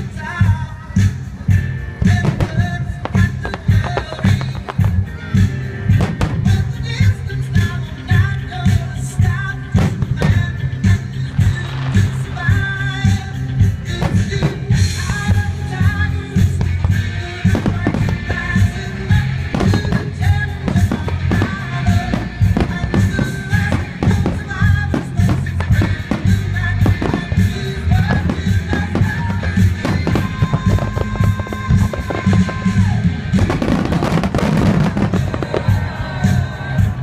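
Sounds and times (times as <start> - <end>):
fireworks popping: 0.0 - 37.0
loud music with bass beat: 0.0 - 37.0.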